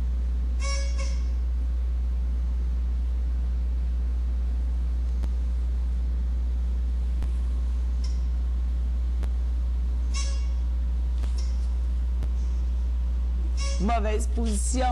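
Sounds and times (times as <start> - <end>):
low hum: 0.0 - 14.9.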